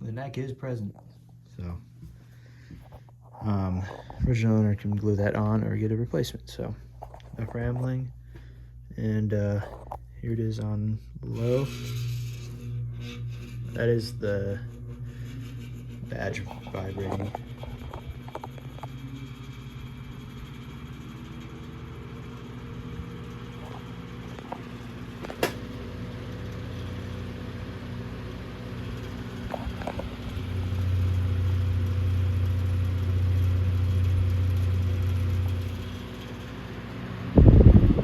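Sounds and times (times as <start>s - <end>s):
table fan motor hum: 10.6s - 38.0s.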